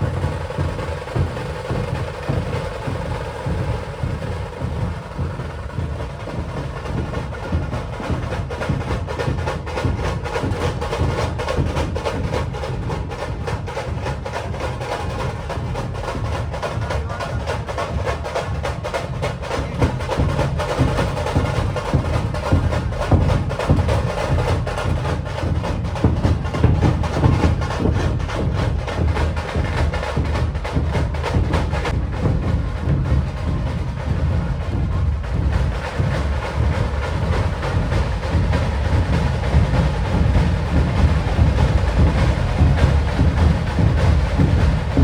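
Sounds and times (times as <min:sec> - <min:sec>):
deep drum beats: 0:00.0 - 0:45.0
sharp cracking drum rolls: 0:00.0 - 0:45.0.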